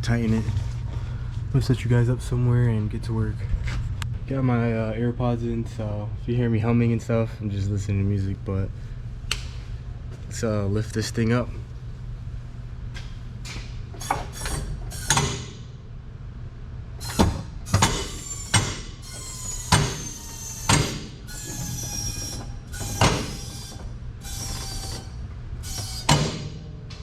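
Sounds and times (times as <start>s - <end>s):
steady low hum: 0.0s - 27.0s
car jack metal clanks: 17.0s - 23.8s, 25.8s - 27.0s.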